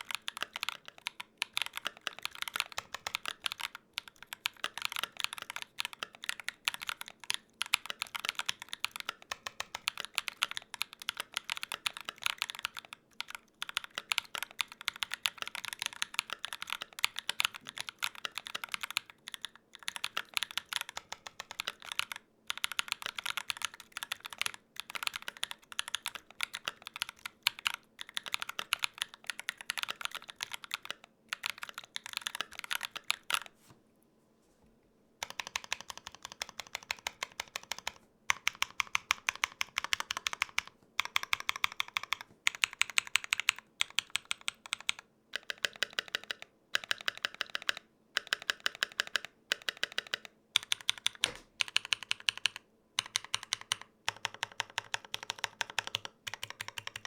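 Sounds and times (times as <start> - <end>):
mechanical keyboard typing: 0.0 - 33.6, 35.2 - 57.0.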